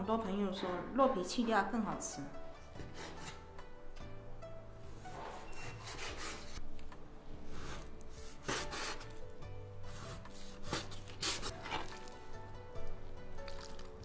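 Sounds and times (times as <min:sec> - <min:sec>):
faint background music: 0:00.0 - 0:14.0
knife cutting on wooden board: 0:05.3 - 0:06.6, 0:07.5 - 0:09.2, 0:09.9 - 0:12.2.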